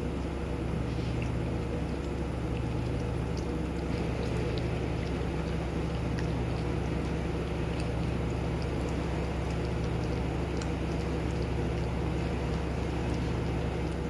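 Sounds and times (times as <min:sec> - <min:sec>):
low machine hum: 0:00.0 - 0:14.0.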